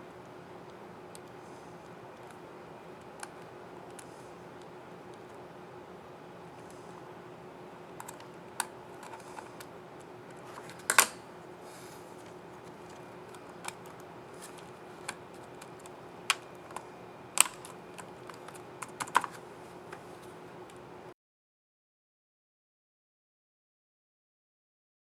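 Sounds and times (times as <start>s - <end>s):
laptop keys clicking: 0.0s - 11.2s, 12.1s - 20.9s
faint steady hum: 0.0s - 21.2s.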